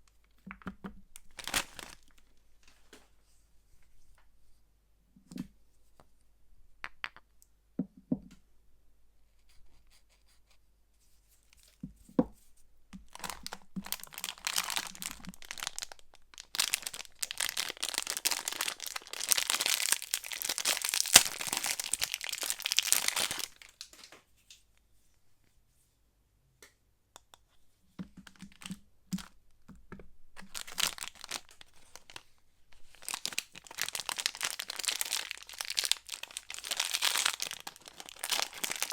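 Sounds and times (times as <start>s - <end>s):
wrapping tearing and crinkling: 1.2s - 2.4s, 13.1s - 24.1s, 30.4s - 38.9s.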